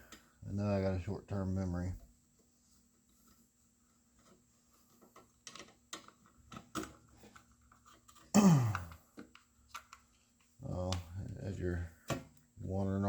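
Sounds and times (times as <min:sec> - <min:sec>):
hands clicking and tapping parts: 0:04.1 - 0:11.1.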